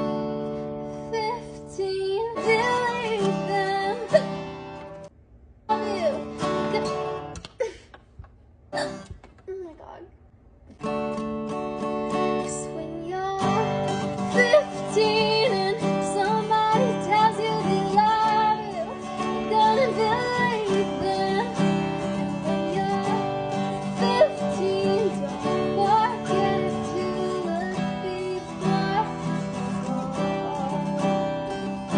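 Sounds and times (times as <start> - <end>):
acoustic guitar strumming: 0.0 - 5.1, 5.7 - 7.4, 10.7 - 31.9
person singing: 5.7 - 7.0, 12.4 - 31.9.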